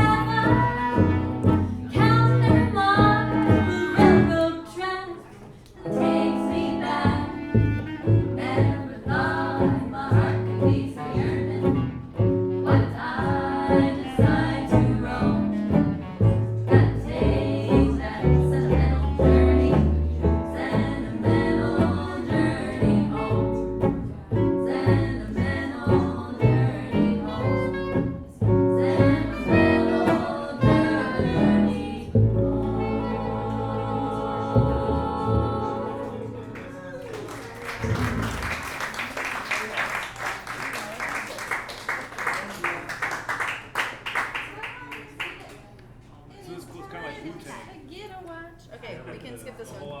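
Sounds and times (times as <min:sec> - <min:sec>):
bass notes: 0:00.0 - 0:04.6, 0:05.9 - 0:36.6, 0:37.8 - 0:38.8
live jazz band playing: 0:00.0 - 0:04.6, 0:05.9 - 0:36.1.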